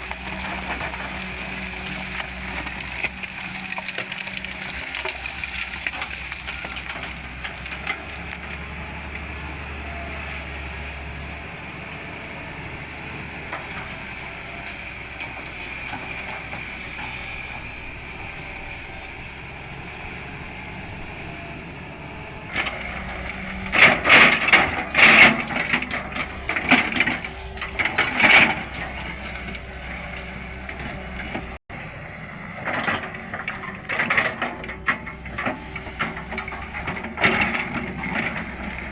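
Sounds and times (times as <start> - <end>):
excavator diesel engine running: 0.0 - 38.9
loud clanks and crunches: 22.2 - 31.6, 32.4 - 38.9.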